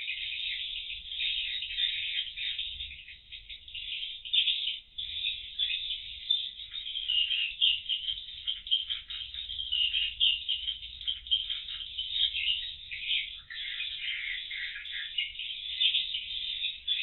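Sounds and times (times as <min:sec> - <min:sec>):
swiftlets twittering and chirping: 0:00.0 - 0:17.0.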